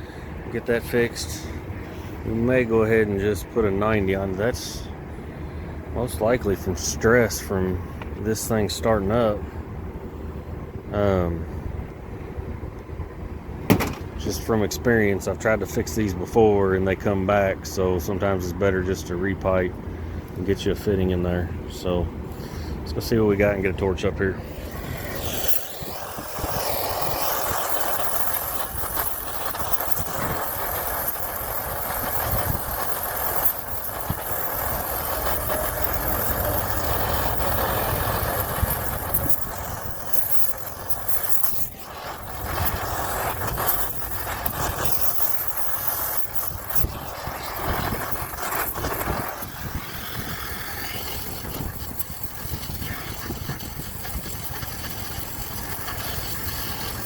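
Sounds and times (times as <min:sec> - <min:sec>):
torch flame hissing: 0:24.4 - 0:57.0.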